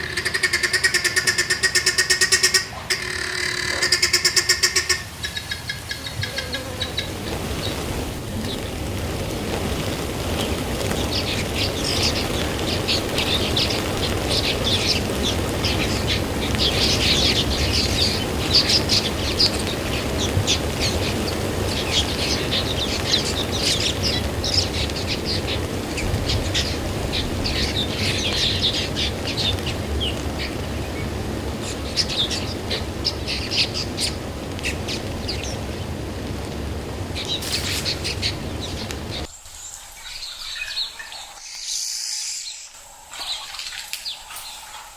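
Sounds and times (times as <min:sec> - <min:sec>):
small birds chirping: 0:00.0 - 0:44.9
strong wind rumble: 0:05.1 - 0:39.3.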